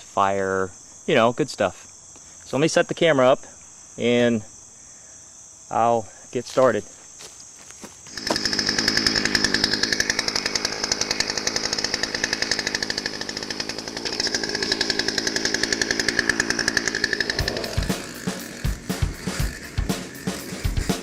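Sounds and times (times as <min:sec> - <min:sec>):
chainsaw running: 0:07.8 - 0:21.0
drum music: 0:17.3 - 0:21.0.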